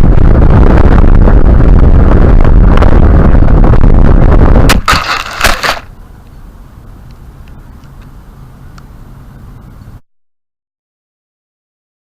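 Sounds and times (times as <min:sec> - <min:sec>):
rocket launch roar with crackling: 0:00.0 - 0:06.0.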